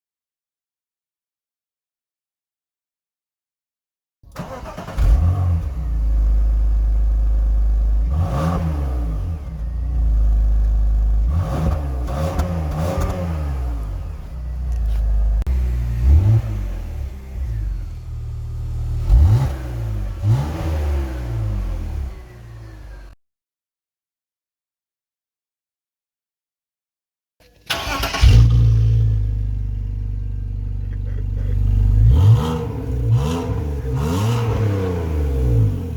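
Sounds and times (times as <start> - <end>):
car engine idling and revving: 4.3 - 23.2, 27.7 - 35.9.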